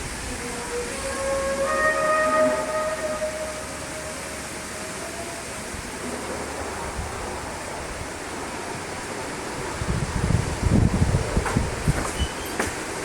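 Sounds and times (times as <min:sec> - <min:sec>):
horn-like drone: 0:00.0 - 0:06.4.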